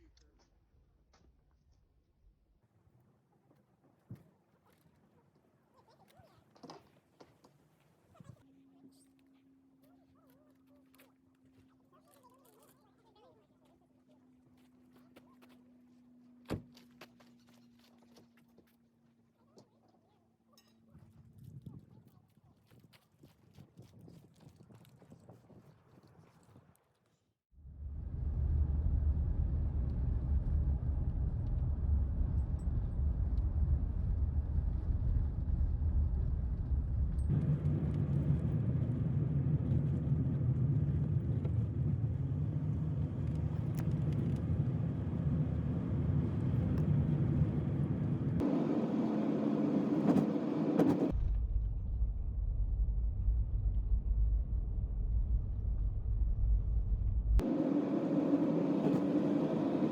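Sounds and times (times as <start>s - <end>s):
van engine and road noise: 27.7s - 51.2s, 53.2s - 59.9s.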